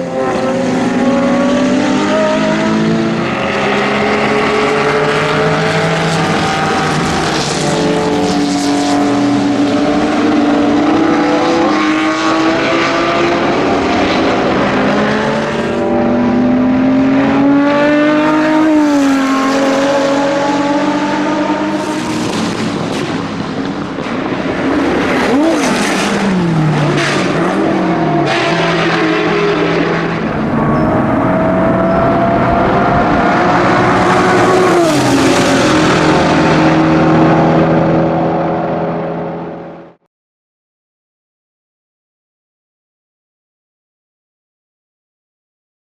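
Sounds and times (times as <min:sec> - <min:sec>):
racing car engine shifting gears: 0:00.0 - 0:39.5.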